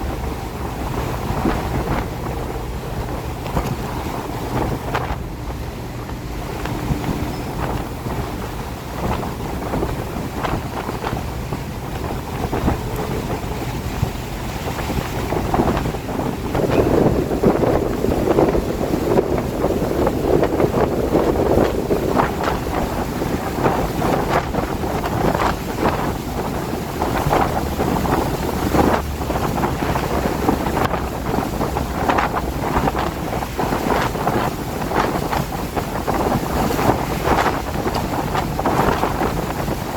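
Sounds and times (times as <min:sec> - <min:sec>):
wind buffeting microphone: 0:00.0 - 0:39.9
rain: 0:11.9 - 0:39.7.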